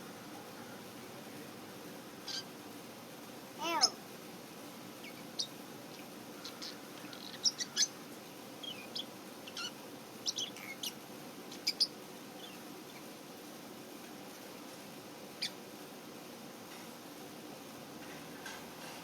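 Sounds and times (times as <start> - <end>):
lovebirds chirping: 2.2 - 2.6, 3.6 - 4.0, 4.9 - 13.2, 15.3 - 15.6.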